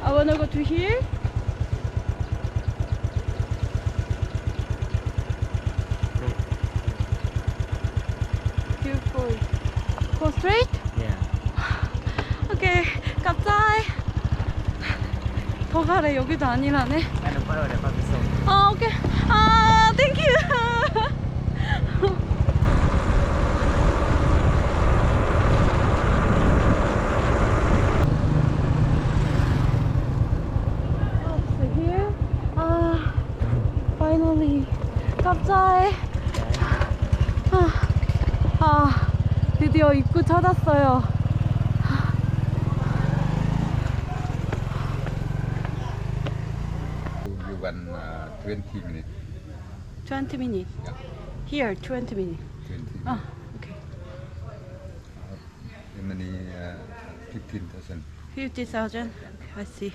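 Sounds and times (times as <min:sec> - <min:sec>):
small engine idling: 0:00.0 - 0:59.9
wind noise on microphone: 0:22.5 - 0:29.4.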